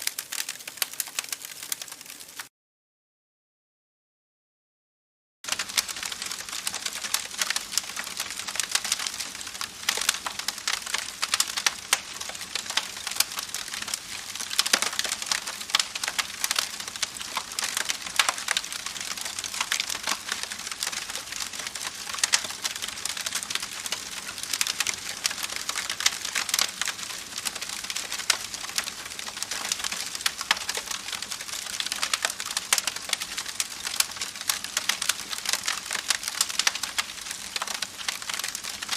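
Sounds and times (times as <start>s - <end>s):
campfire crackling: 0.0s - 2.5s, 5.5s - 38.9s.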